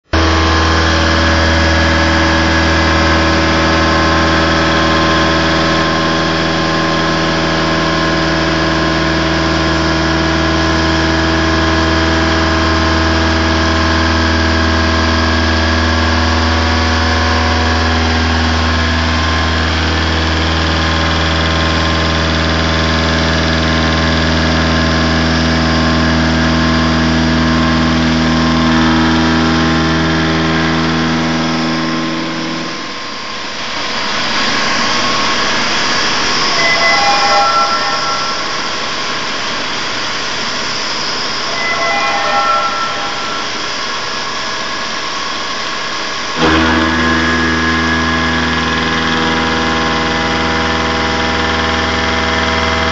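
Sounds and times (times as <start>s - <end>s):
milling machine hum: 0.1s - 52.9s.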